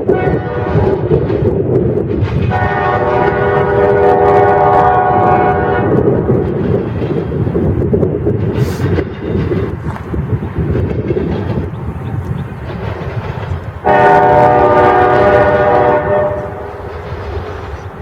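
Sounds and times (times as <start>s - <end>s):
passing train rumble: 0.0s - 18.0s
locomotive air horn chord: 0.1s - 1.0s, 2.5s - 6.0s, 13.8s - 16.9s.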